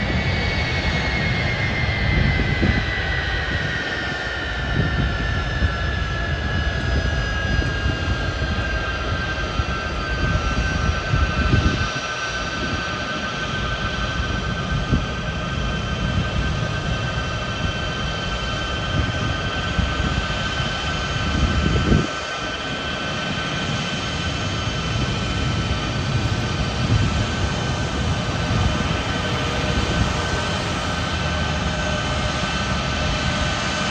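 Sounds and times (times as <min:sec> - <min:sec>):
jet engines whining: 0:00.0 - 0:33.9.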